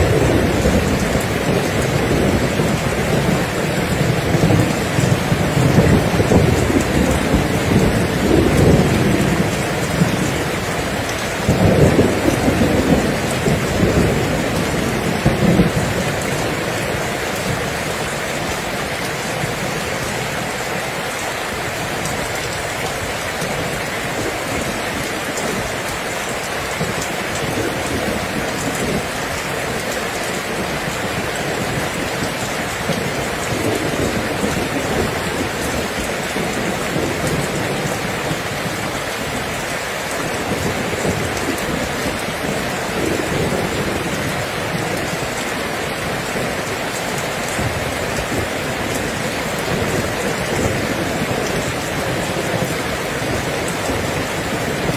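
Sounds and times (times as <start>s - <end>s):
low rumble of thunder: 0.0s - 20.5s
heavy rain falling: 0.0s - 54.9s.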